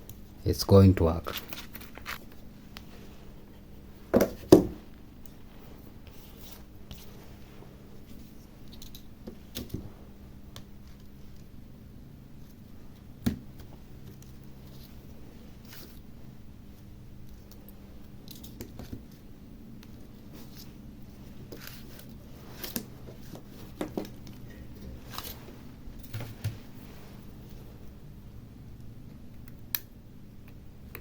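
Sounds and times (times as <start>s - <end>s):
sharp knocks on workbench: 4.2s - 4.8s.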